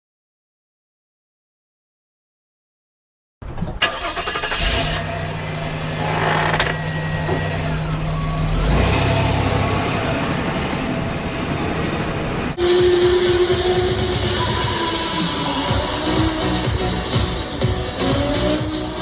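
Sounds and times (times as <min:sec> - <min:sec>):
go-kart engine running: 0:03.9 - 0:19.0
music: 0:12.6 - 0:19.0.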